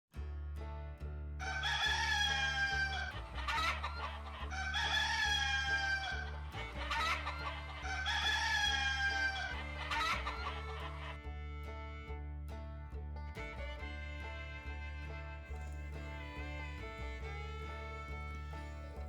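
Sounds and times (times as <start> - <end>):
rooster crowing: 1.4 - 11.1
hens clucking: 1.4 - 11.3.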